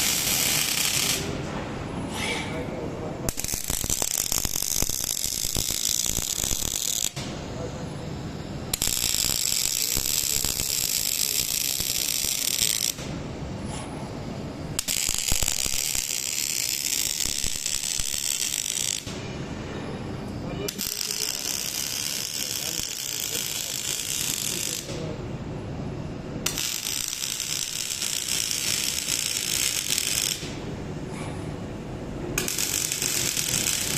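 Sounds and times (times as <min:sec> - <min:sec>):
welding arc crackling and hissing: 0:00.0 - 0:01.4, 0:03.3 - 0:07.3, 0:08.7 - 0:13.1, 0:14.8 - 0:19.2, 0:20.7 - 0:25.0, 0:26.4 - 0:30.6, 0:32.4 - 0:33.9.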